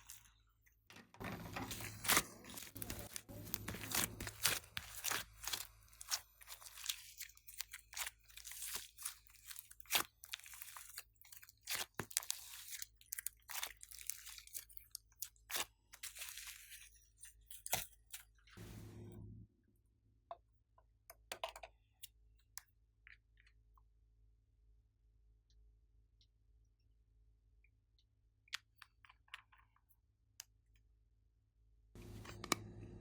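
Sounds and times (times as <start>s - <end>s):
slime popping and crackling: 1.7s - 16.2s.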